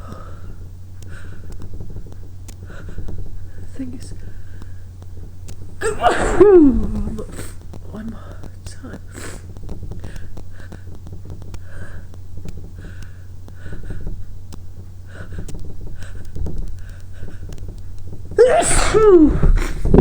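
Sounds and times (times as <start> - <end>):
low steady hum: 0.0 - 20.0
woman sniffing and breathing: 9.1 - 9.5.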